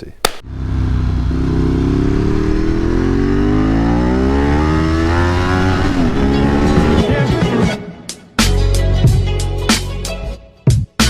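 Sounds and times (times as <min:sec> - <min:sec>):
motorcycle engine accelerating: 0:00.4 - 0:07.2.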